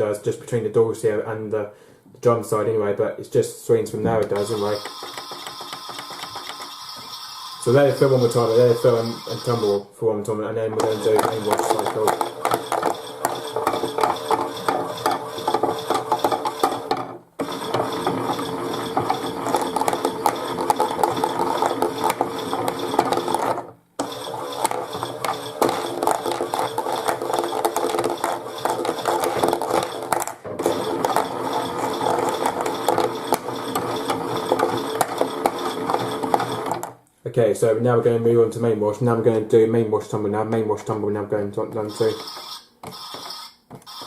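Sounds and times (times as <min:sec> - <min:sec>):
toy washing machine motor whine: 0:04.3 - 0:09.8, 0:10.8 - 0:36.9, 0:41.9 - 0:44.0.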